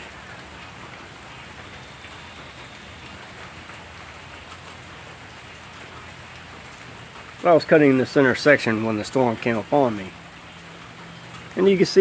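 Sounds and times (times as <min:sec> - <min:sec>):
rain patter: 0:00.0 - 0:12.0.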